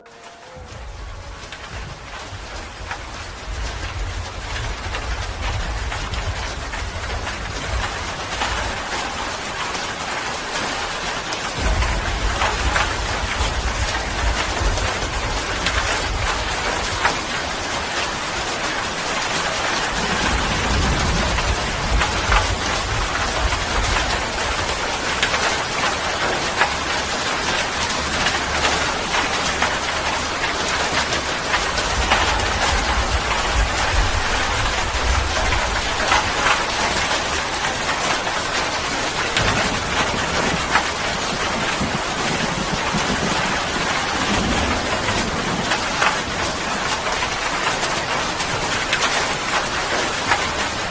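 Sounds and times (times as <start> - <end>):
low rumbles: 0.0 - 10.0, 11.6 - 17.4, 27.8 - 47.6
rain falling: 0.0 - 50.9.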